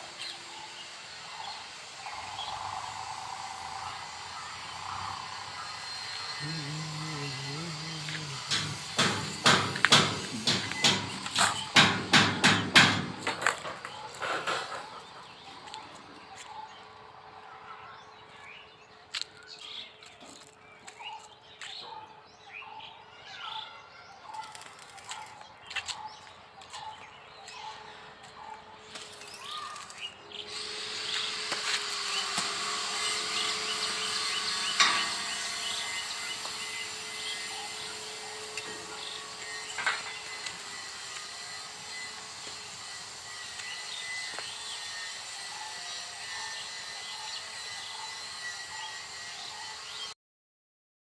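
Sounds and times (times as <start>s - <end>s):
sharp knocks: 8.4s - 13.8s.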